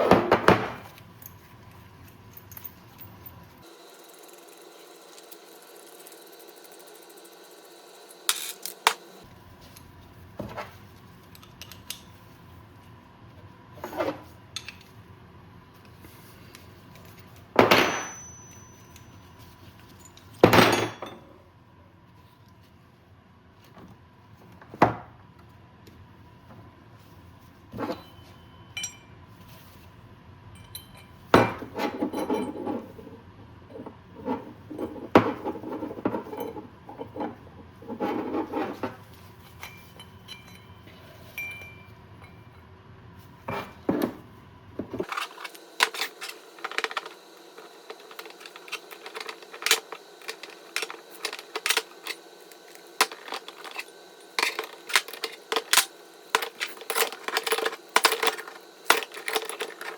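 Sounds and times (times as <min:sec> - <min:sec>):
metal tools clinking: 0:00.8 - 0:07.0, 0:08.3 - 0:09.2, 0:17.0 - 0:21.2, 0:39.4 - 0:41.9, 0:45.0 - 0:59.9.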